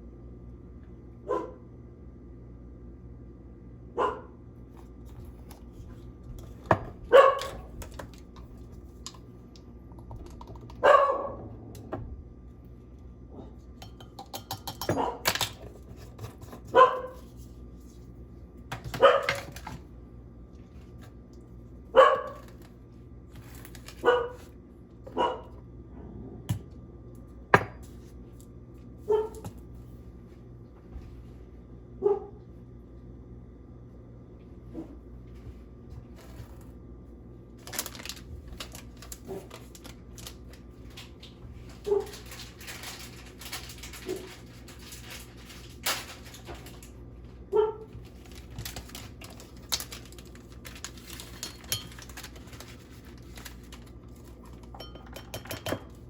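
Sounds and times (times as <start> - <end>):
dog barking: 1.2 - 1.6, 4.0 - 4.4, 7.1 - 7.6, 10.8 - 11.5, 14.9 - 15.2, 16.7 - 17.2, 19.0 - 19.4, 21.9 - 22.4, 24.0 - 24.4, 25.1 - 25.6, 29.1 - 29.4, 32.0 - 32.4, 41.9 - 42.1, 47.5 - 47.9.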